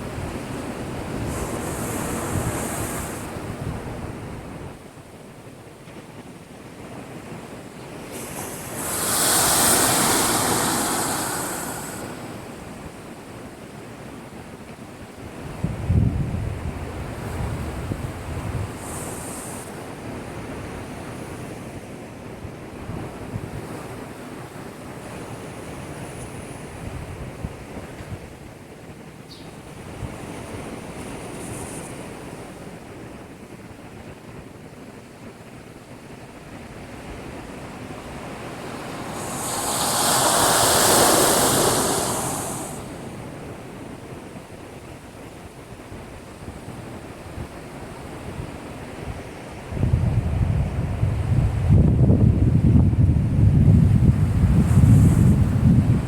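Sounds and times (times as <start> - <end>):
big wave surging: 0.0 - 4.8, 7.0 - 14.0, 36.1 - 45.4
storm surf against breakwater: 0.0 - 56.0.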